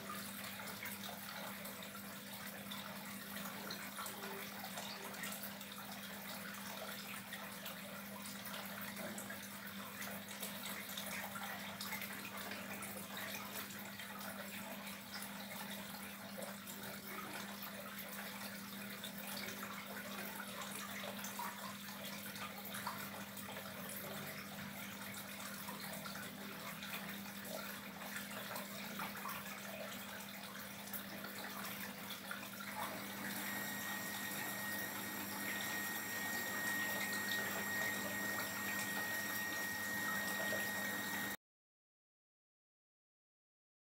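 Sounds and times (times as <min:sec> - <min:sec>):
water trickling and splashing: 0:00.0 - 0:41.4
thin high whine: 0:32.9 - 0:41.4.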